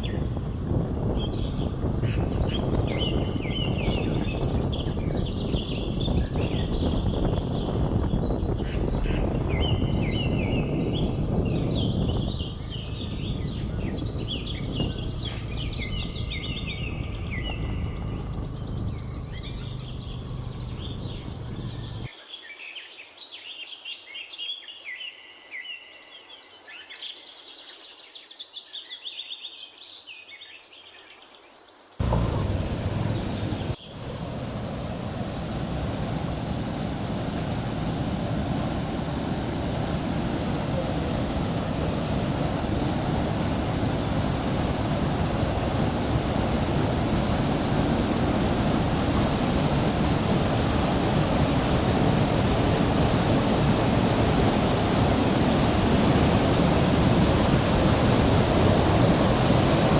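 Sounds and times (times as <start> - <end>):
low rushing noise: 0.0 - 22.1, 32.0 - 59.9
birds chirping and singing: 1.1 - 22.1, 32.0 - 33.8.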